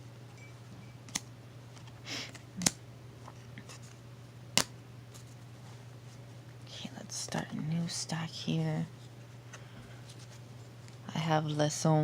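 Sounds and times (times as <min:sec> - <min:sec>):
cards snapping: 0:01.0 - 0:02.8, 0:03.6 - 0:05.2
cards rustling: 0:01.1 - 0:04.0.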